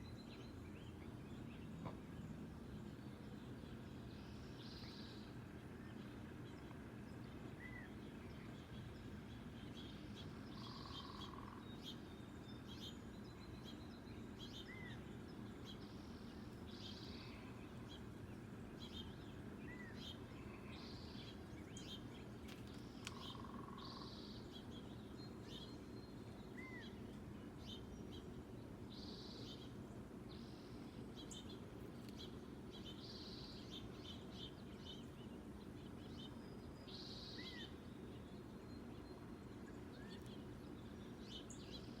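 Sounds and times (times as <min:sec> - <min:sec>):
birds chirping: 0:00.0 - 0:42.0
low background hum: 0:00.0 - 0:42.0
soft arched bird calls: 0:07.5 - 0:12.1, 0:18.8 - 0:27.2.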